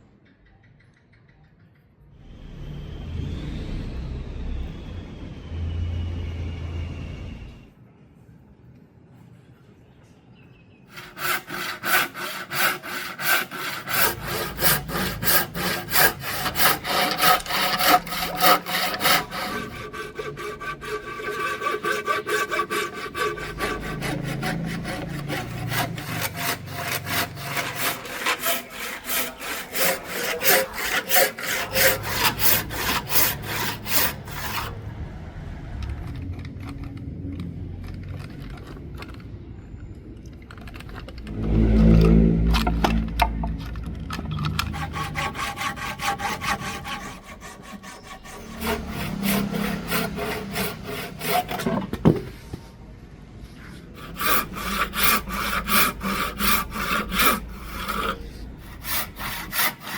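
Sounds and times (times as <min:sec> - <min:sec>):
hand saw cutting wood: 0:10.9 - 0:34.8, 0:41.3 - 0:52.5, 0:53.8 - 0:59.9.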